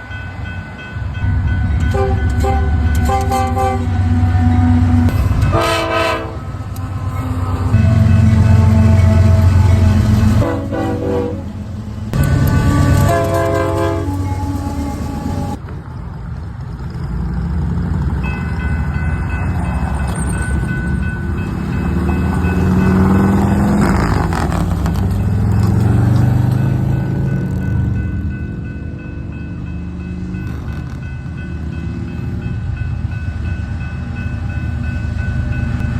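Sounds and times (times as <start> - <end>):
train rumble: 0.0 - 35.9
locomotive air horn blasts: 1.8 - 15.6.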